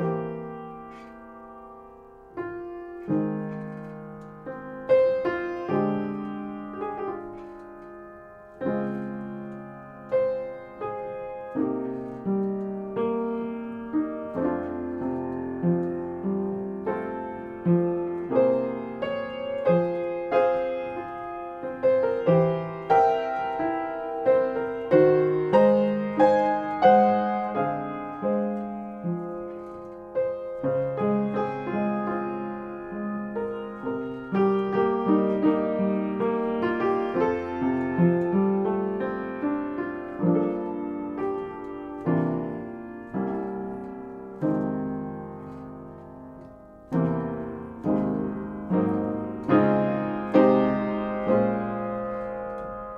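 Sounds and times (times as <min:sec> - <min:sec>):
slow jazz piano ballad: 0:00.0 - 0:52.9.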